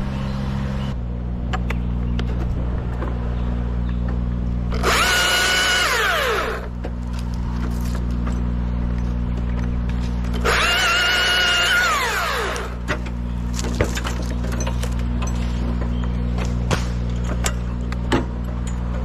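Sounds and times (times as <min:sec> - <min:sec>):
engine idling drone: 0:00.0 - 0:19.0
chainsaw revving: 0:04.7 - 0:06.7, 0:10.4 - 0:12.8.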